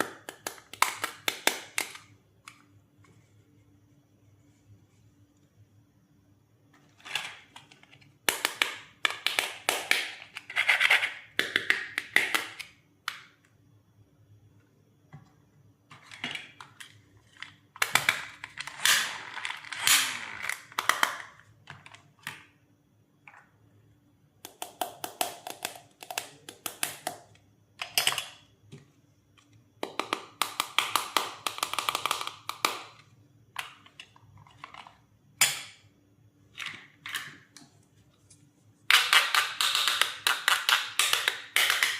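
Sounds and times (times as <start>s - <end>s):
plastic toys clicking and scraping: 15.9s - 22.1s.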